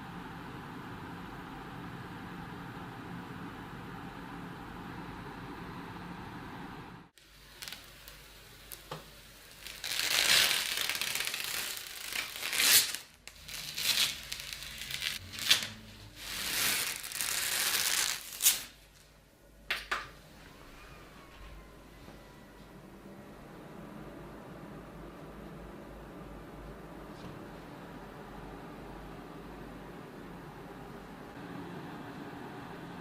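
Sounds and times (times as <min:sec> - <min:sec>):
material crinkling and rustling: 0:08.8 - 0:19.1.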